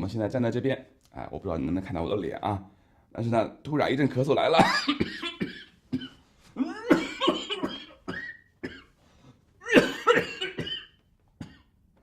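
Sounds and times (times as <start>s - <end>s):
man coughing: 4.6s - 9.0s, 9.6s - 11.8s.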